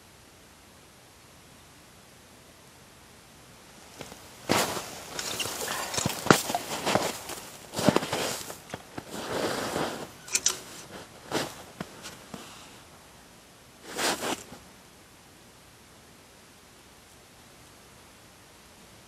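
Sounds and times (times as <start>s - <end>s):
rustling and crunching: 3.8s - 12.7s, 13.8s - 14.6s
sharp clicks: 10.3s - 10.6s.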